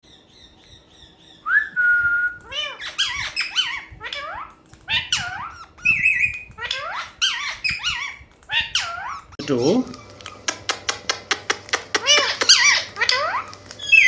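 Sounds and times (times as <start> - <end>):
parrot whistling: 0.3 - 10.7, 11.3 - 14.0
parrot meow-like calls: 2.4 - 10.5, 11.9 - 14.0.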